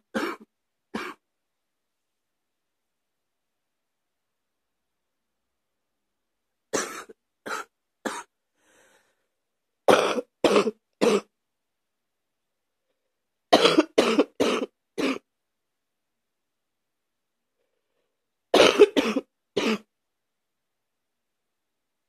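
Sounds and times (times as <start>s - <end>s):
person coughing deeply: 0.1s - 1.2s, 6.7s - 8.3s, 9.9s - 11.3s, 13.5s - 15.2s, 18.6s - 19.9s.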